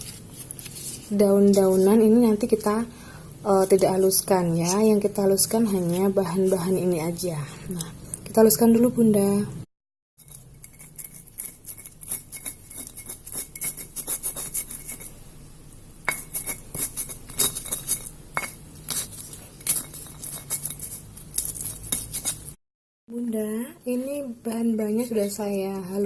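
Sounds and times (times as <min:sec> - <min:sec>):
spices ground by hand: 0:10.2 - 0:15.2, 0:16.0 - 0:22.6.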